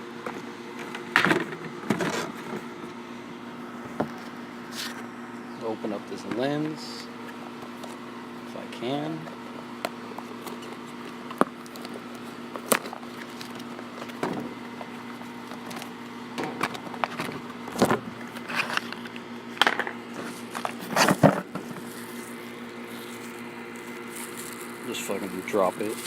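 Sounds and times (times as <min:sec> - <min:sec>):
crinkly packaging rustles: 0:20.2 - 0:26.0.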